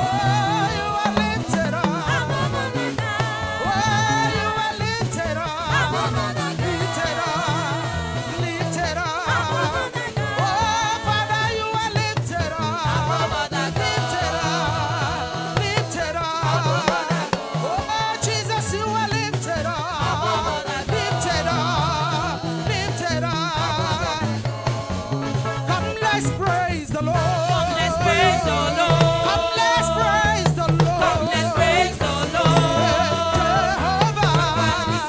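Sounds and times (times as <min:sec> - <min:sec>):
bass line: 0:00.0 - 0:35.0
drums: 0:00.0 - 0:35.0
voices singing: 0:00.0 - 0:35.0.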